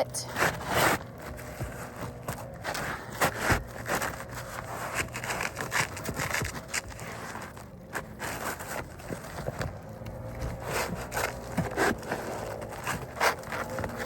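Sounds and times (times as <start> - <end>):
shingle scraping on roof: 0.3 - 14.0.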